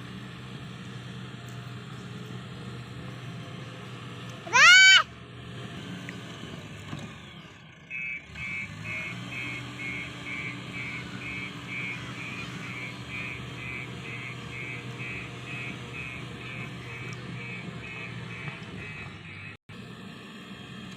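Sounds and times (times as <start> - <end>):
low engine hum: 0.0 - 20.9
reversing alarm beeping: 7.9 - 19.6.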